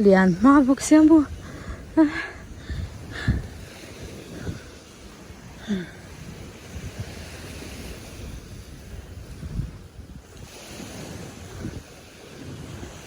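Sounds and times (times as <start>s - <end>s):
sea waves washing on beach: 0.0s - 13.0s
wind buffeting microphone: 0.0s - 13.0s.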